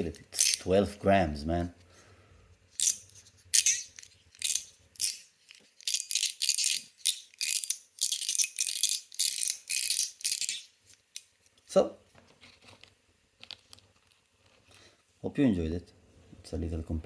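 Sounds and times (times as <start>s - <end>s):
fidget toy rattly clacks: 2.8s - 10.7s.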